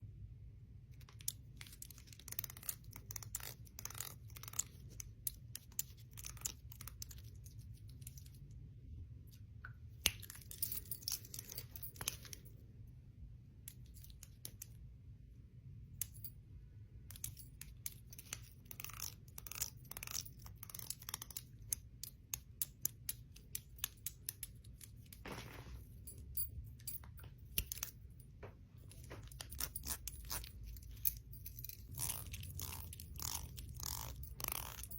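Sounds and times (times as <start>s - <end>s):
low steady hum: 0.0s - 34.9s
bangles and rings clinking: 10.1s - 12.6s, 23.1s - 34.9s.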